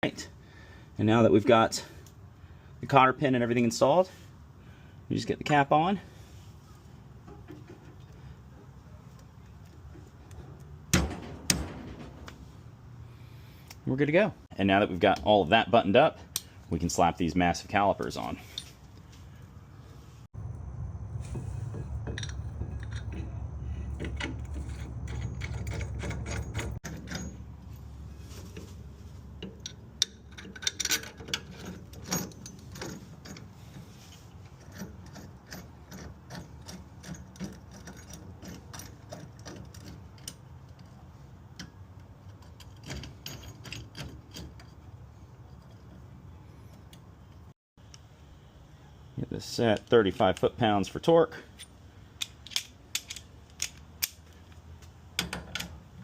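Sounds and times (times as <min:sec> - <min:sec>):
metal tools clinking: 0:18.2 - 0:18.9, 0:22.0 - 0:46.1, 0:51.5 - 0:54.5
low hum: 0:18.4 - 0:30.4.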